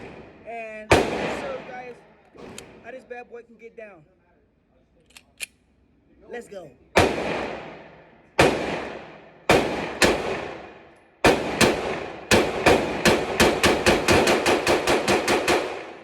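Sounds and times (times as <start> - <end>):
pistol shots echoing: 0.0 - 2.8, 7.0 - 16.0.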